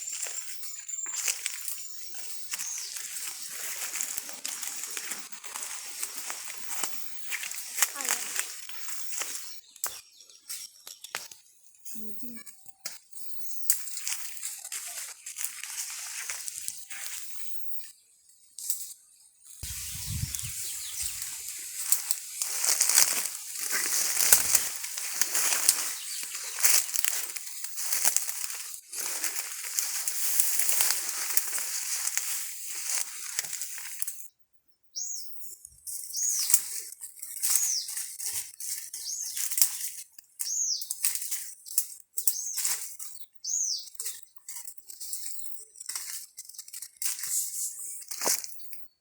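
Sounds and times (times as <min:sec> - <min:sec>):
dry rustling and crackling: 0:00.0 - 0:09.5, 0:13.7 - 0:17.5, 0:19.6 - 0:34.3
high arching chirps: 0:19.6 - 0:32.0.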